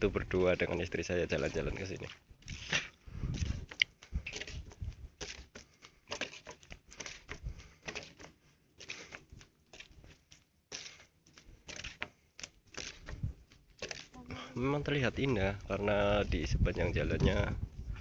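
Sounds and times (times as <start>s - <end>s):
footsteps on wooden boards: 0.3s - 14.2s.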